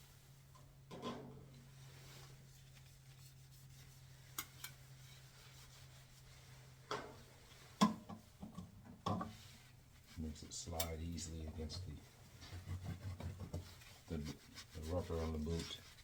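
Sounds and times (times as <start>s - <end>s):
hands rubbing rubber: 9.3s - 16.0s
knocks and handling sounds: 12.1s - 14.8s.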